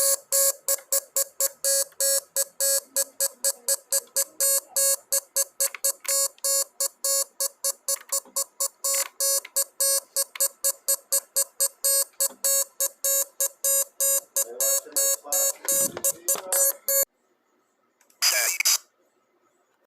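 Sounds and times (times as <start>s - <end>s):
morse code beeps: 0.0s - 17.1s.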